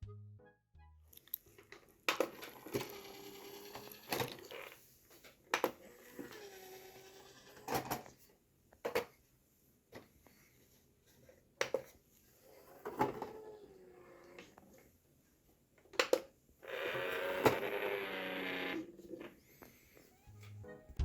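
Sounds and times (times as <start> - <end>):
motorised lid grinding whine: 2.5 - 4.5, 16.7 - 19.2.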